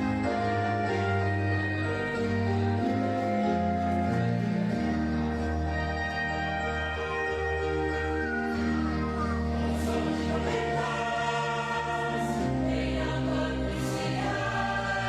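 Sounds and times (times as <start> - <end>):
steady bass accompaniment: 0.0 - 15.0
choir singing a hymn: 8.0 - 15.0.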